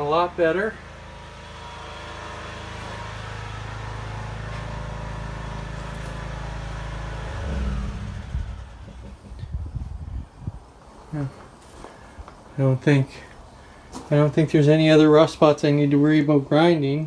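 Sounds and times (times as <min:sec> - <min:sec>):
vehicle engine running: 0:00.0 - 0:10.4.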